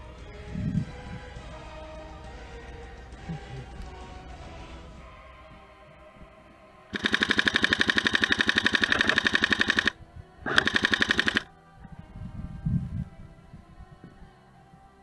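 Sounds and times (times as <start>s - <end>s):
airsoft rifle automatic fire: 6.9s - 11.5s.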